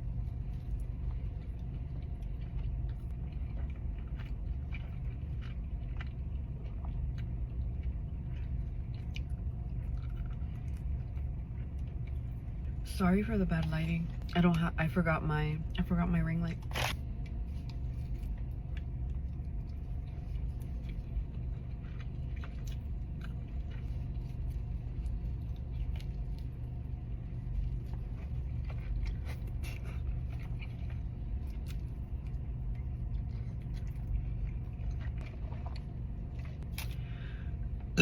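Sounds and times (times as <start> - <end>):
steady low rumble: 0.0 - 38.0
person chewing food: 0.2 - 12.7, 16.6 - 38.0.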